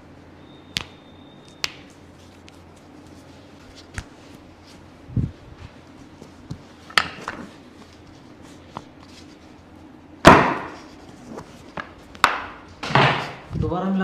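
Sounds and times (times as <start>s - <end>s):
loud knock: 10.3s - 10.8s.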